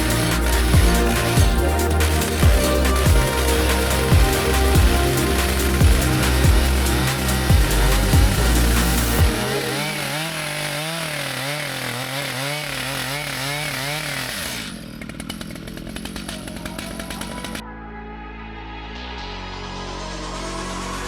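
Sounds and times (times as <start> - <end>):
background music: 0.0 - 10.3, 16.6 - 21.0
chainsaw cutting log: 0.0 - 17.6.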